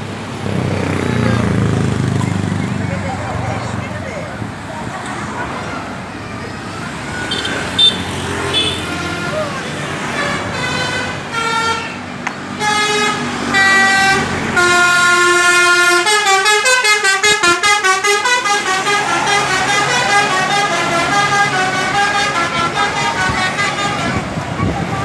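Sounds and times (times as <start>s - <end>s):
bus musical horn: 7.2s - 25.0s.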